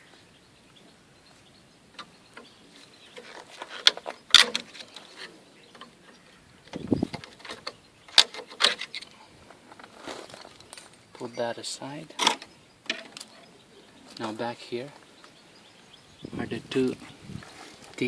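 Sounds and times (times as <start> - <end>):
metal clicking and scraping: 3.1 - 9.2.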